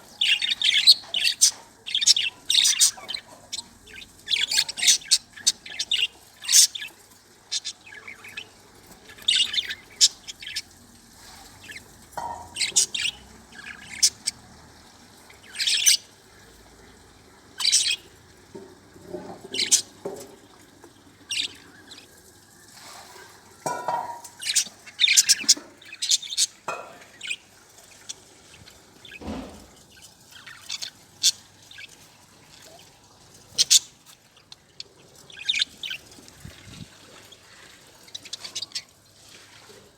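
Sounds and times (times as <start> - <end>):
budgerigars chirping: 0.1 - 10.7, 11.6 - 14.5, 15.3 - 16.1, 17.6 - 18.1, 19.5 - 19.9, 21.3 - 22.1, 23.7 - 29.6, 30.3 - 32.0, 33.5 - 36.1, 38.1 - 38.9.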